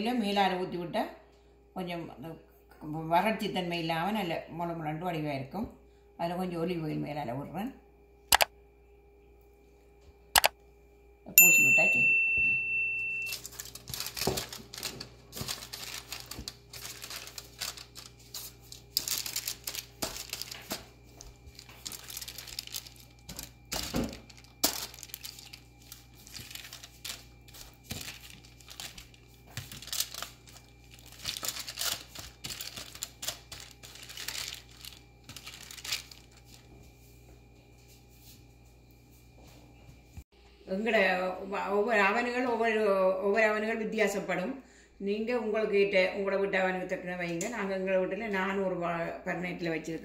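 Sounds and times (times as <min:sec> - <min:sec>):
rustling and crinkling: 0:13.3 - 0:38.6.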